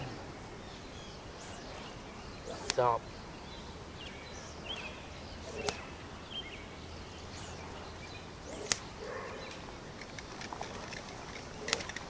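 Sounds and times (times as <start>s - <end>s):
fly line cracking like whip: 1.3s - 3.0s, 5.4s - 6.1s, 8.4s - 12.0s.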